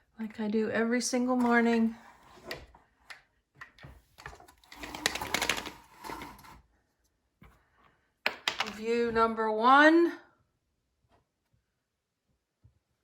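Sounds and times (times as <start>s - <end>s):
window blinds rattling: 4.3s - 6.6s.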